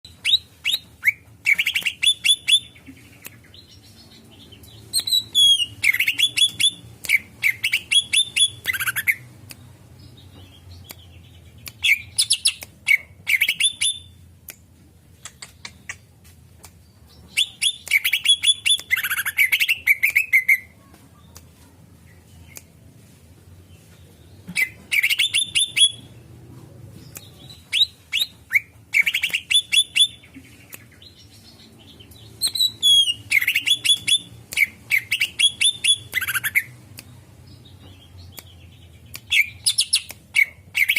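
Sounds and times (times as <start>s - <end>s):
bird calling sharp repeated notes: 5.0s - 9.2s, 32.4s - 36.8s.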